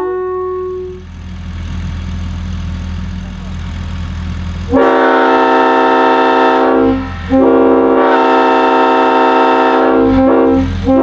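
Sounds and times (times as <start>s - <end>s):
locomotive air horn blasts: 0.0s - 1.0s, 4.7s - 11.0s.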